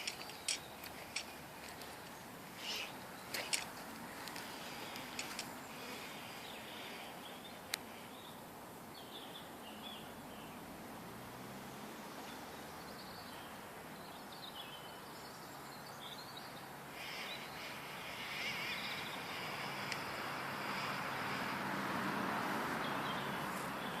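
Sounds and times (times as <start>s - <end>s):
birds chirping: 0.0s - 10.8s, 11.5s - 24.0s
outdoor noise: 0.0s - 24.0s
rushing hiss: 16.9s - 22.8s.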